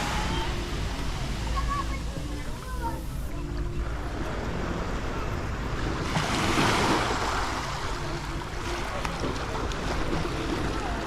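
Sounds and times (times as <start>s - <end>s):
waves washing onto beach: 0.0s - 3.2s, 3.9s - 11.0s.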